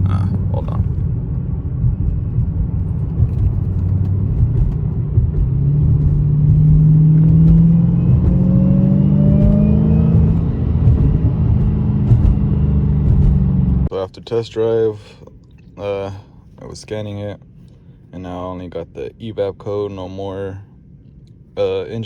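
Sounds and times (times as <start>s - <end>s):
car engine accelerating: 0.0s - 13.9s
supercharger whine: 0.0s - 15.2s.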